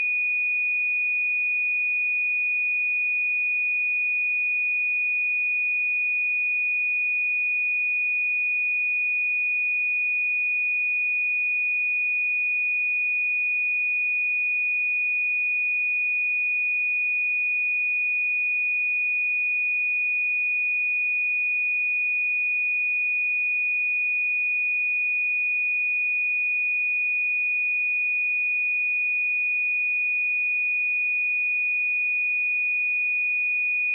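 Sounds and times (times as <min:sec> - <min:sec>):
sine wave test tone: 0:00.0 - 0:33.9.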